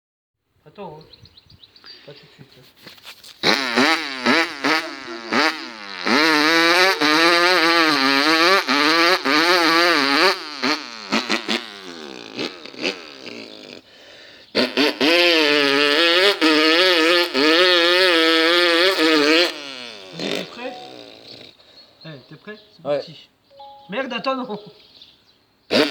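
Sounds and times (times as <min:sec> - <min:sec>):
person imitating motorbike engine: 0:03.4 - 0:21.6.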